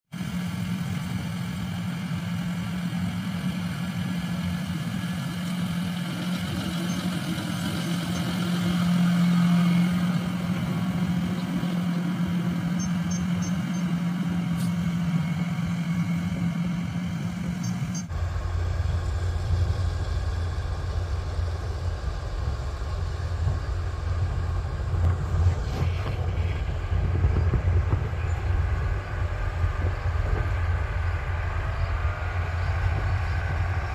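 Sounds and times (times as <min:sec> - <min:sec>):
combine harvester engine drone: 0:00.1 - 0:33.9.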